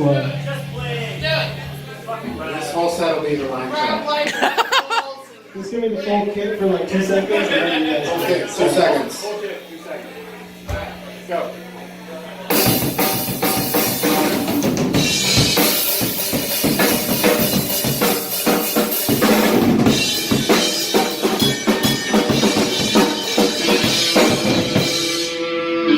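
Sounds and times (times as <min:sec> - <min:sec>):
drum kit playing: 0:12.5 - 0:25.5.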